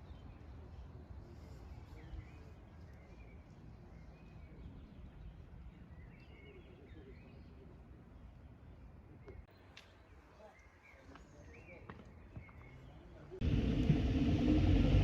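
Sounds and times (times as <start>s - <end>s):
low outdoor rumble: 13.4s - 15.0s.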